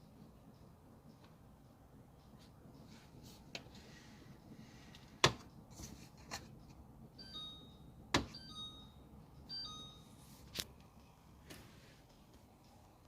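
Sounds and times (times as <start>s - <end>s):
high chime-like electronic tones: 7.2s - 10.3s.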